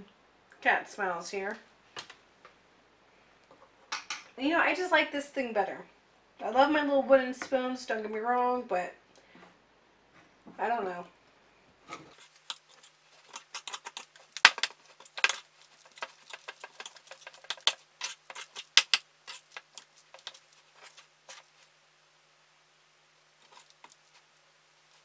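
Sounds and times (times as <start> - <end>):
utensil mixing sticky dough: 12.1 - 22.0, 23.2 - 25.0.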